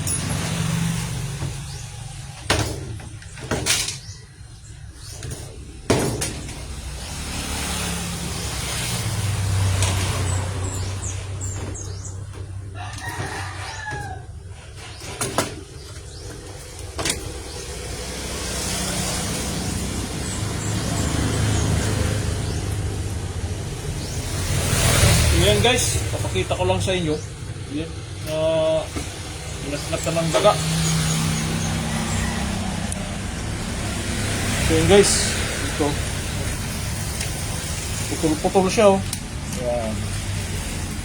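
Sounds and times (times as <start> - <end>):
low engine rumble: 0.0 - 41.0
sharp clicks and knocks: 14.8 - 17.7.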